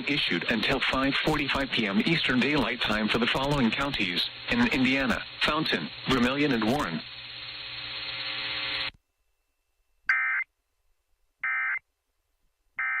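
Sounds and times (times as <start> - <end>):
radio static hiss: 0.0 - 9.0.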